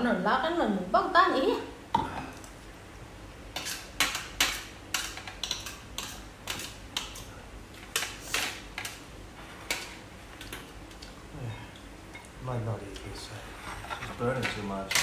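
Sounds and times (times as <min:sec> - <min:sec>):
utensils clinking against dishes: 0:03.6 - 0:07.3, 0:07.9 - 0:09.0, 0:13.5 - 0:15.0.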